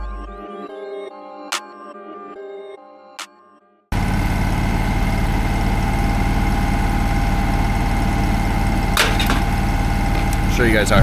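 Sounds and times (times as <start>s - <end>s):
engine idling: 3.9s - 11.0s.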